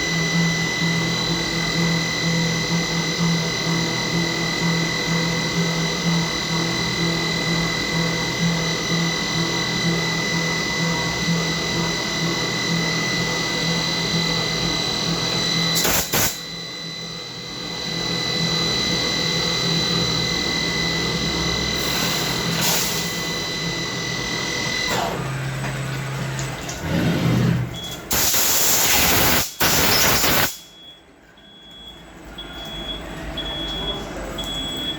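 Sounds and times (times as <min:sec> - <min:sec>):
machine high whine: 0:00.0 - 0:30.9
loud hissing bursts: 0:28.1 - 0:30.6
short beeps: 0:29.9 - 0:34.9.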